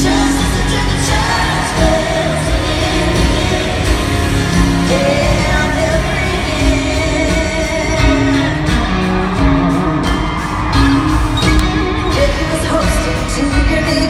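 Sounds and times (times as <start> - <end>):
woman singing: 0.0 - 9.1, 12.0 - 14.0
rock band playing: 0.0 - 14.0.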